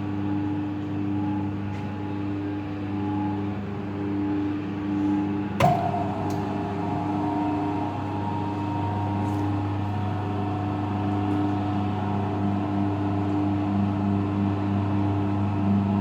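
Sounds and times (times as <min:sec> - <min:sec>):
machine electric hum: 0:00.0 - 0:16.0
steady machine tones: 0:05.6 - 0:16.0.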